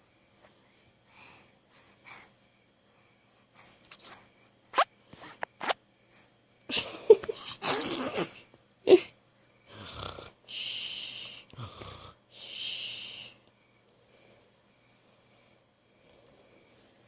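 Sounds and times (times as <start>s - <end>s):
pretend snoring breaths: 9.7s - 10.4s, 11.1s - 12.2s.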